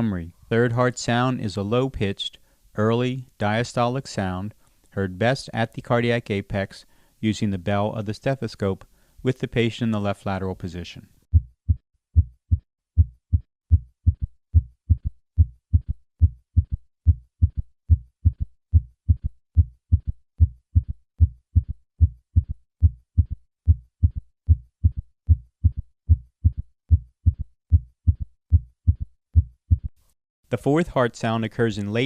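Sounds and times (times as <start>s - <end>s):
heartbeat gallop thumps: 11.3s - 29.9s.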